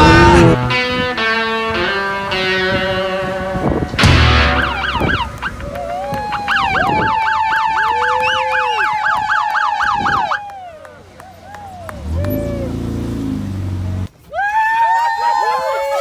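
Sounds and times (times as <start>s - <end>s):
electronic siren wailing and yelping: 4.4s - 10.6s.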